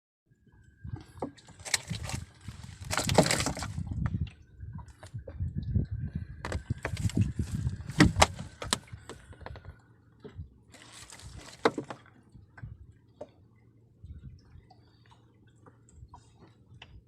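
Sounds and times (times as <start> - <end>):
rustling clatter: 1.6 - 3.8.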